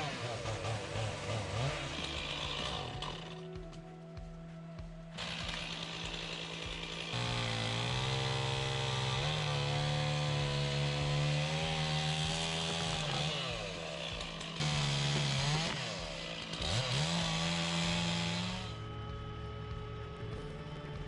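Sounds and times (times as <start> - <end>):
chainsaw running: 0.0 - 21.0.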